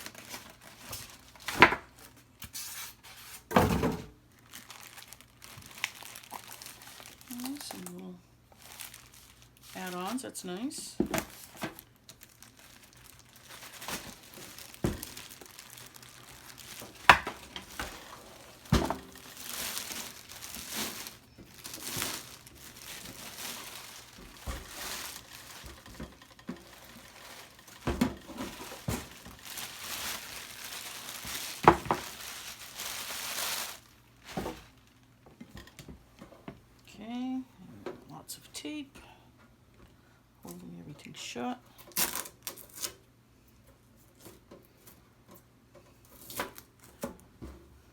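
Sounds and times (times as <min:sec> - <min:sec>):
plastic packaging crinkling: 0:00.0 - 0:02.2, 0:04.3 - 0:35.1, 0:41.9 - 0:42.9.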